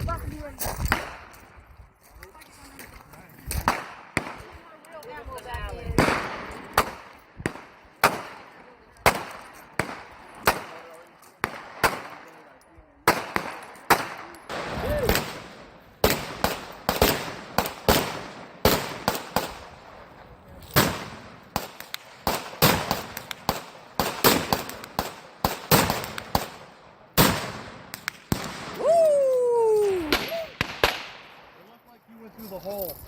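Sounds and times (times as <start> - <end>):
gunshots echoing: 3.6 - 4.6, 6.0 - 12.4, 13.0 - 20.1, 20.7 - 28.8, 30.0 - 31.5.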